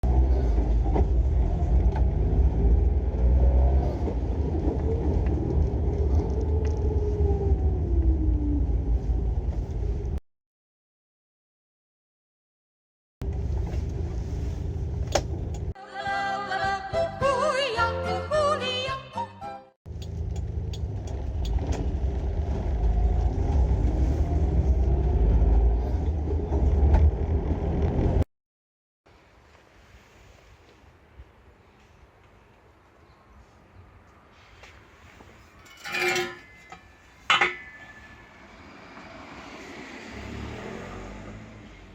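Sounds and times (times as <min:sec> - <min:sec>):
engine deep rumble: 0:00.0 - 0:10.2, 0:13.2 - 0:15.8, 0:19.9 - 0:28.2.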